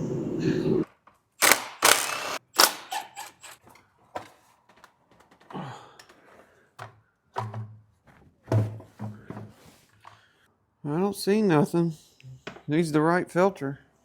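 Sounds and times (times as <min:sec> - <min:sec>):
parts being handled clicks and knocks: 0:02.8 - 0:10.3.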